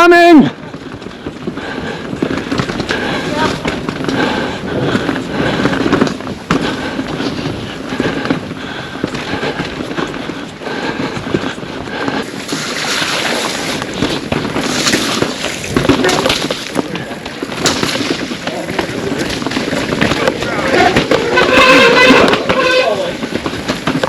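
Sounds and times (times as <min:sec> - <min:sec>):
bike clattering and rattling: 0:00.2 - 0:24.0
tyres crunching over dirt and rocks: 0:11.2 - 0:24.0.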